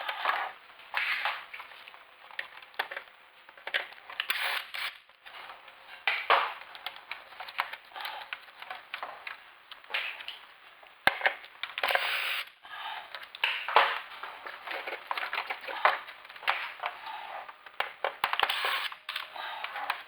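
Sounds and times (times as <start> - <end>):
hard parts clicking and scraping: 13.1 - 20.0.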